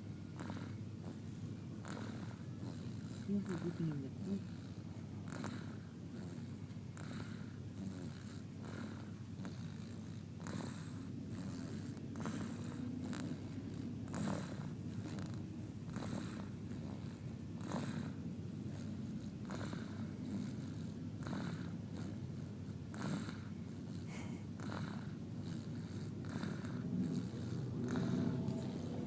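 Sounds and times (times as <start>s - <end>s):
person snoring: 22.9s - 29.0s.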